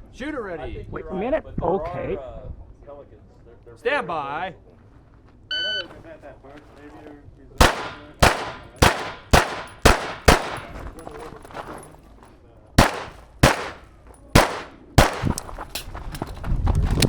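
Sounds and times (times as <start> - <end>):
pistol shots with echo: 7.6 - 11.0, 12.8 - 13.8, 14.4 - 15.4.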